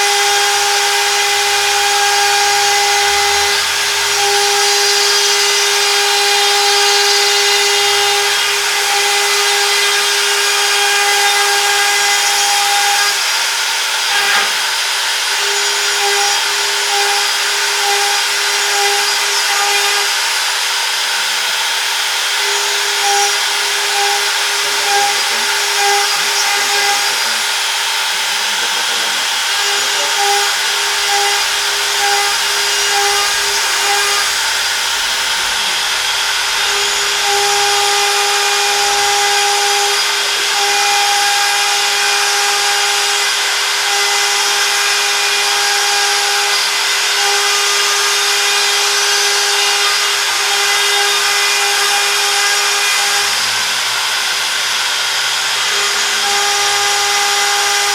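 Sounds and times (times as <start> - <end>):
router spindle whine: 0.0 - 57.9
cutting hiss: 21.0 - 37.6.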